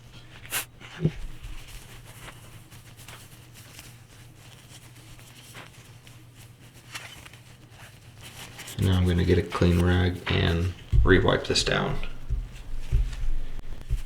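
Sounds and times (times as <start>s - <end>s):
faint rubbing and scratching: 0.0s - 14.0s
low steady hum: 0.0s - 14.0s
knock: 11.0s - 11.3s.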